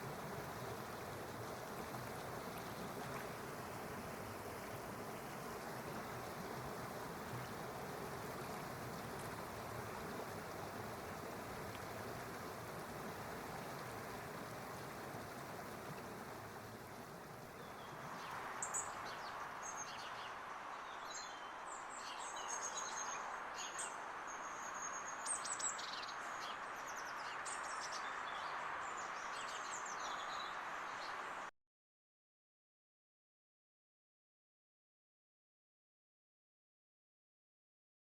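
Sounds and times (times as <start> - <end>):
steady rushing hiss: 0.0 - 2.6
small birds chirping: 17.5 - 31.2.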